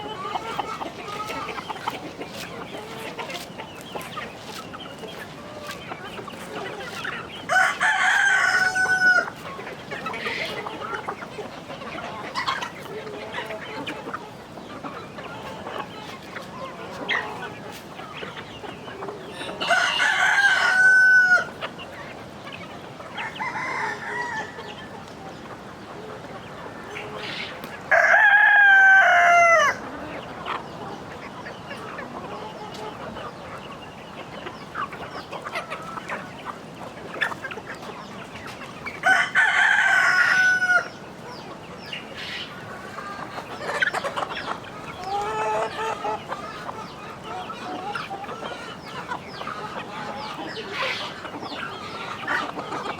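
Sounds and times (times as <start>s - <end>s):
chickens clucking: 0.0s - 52.9s
rooster crowing: 7.5s - 9.3s, 27.9s - 29.8s.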